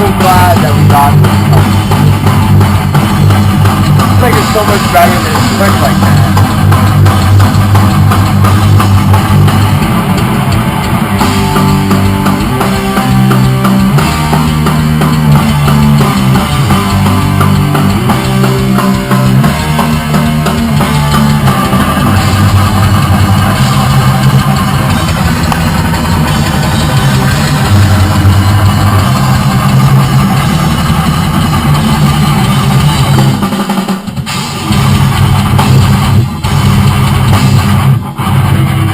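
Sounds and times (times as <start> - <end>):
drum kit: 0.0 - 38.9
electric guitars playing: 0.0 - 38.9.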